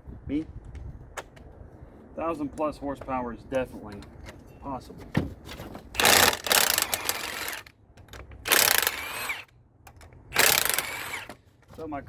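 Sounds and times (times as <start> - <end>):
impact wrench running: 6.0 - 7.7, 8.5 - 9.5, 10.3 - 11.4.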